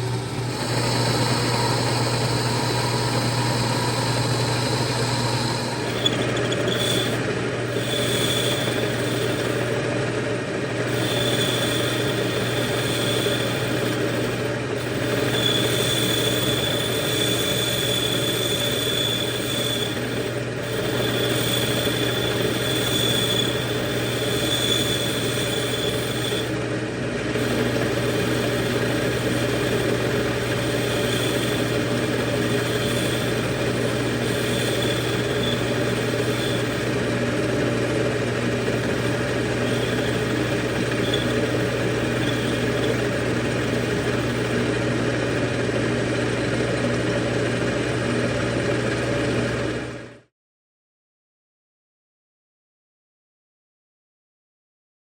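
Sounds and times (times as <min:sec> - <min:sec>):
thin high whine: 0:00.0 - 0:09.8, 0:10.8 - 0:26.6, 0:27.4 - 0:45.4
metal lathe humming: 0:00.0 - 0:50.1.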